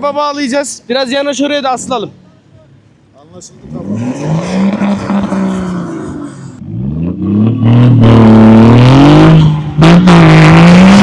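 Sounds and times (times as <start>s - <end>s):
off-road engine revving: 3.4s - 11.0s.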